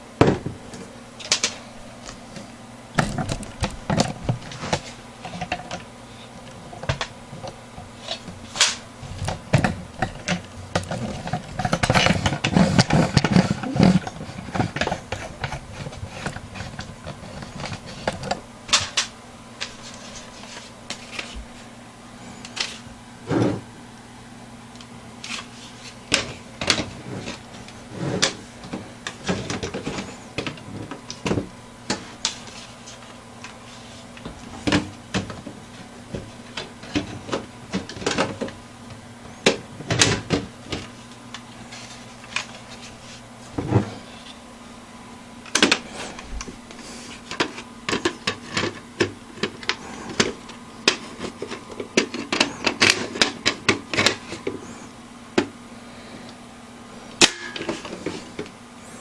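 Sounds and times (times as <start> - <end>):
steady low hum: 0.0 - 59.0
computer parts clicking and snapping: 1.2 - 1.6.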